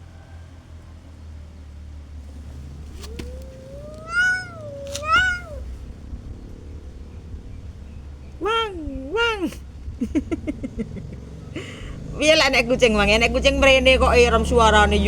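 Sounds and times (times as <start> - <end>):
cat low drawn-out yowl: 2.3 - 5.9
cat high wailing cries: 2.4 - 5.7.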